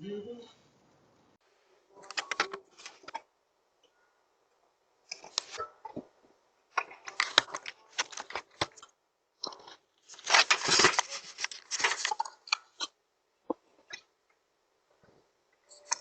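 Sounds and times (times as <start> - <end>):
rustling crunching noise: 6.8 - 12.5.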